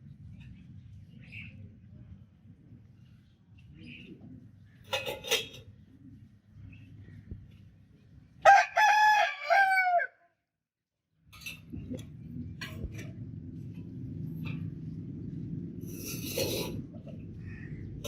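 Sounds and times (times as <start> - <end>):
rooster crowing: 8.4 - 10.2
low steady rumble: 11.3 - 18.0.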